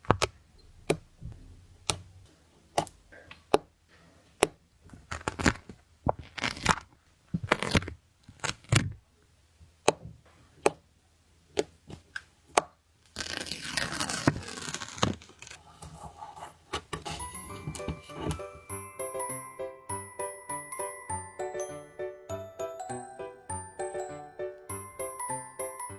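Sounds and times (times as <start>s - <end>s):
crinkling and tearing: 4.8s - 9.0s, 13.0s - 16.2s.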